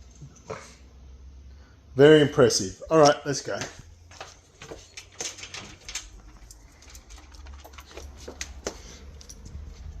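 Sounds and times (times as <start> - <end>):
dog claws on hard floor: 3.6 - 9.7.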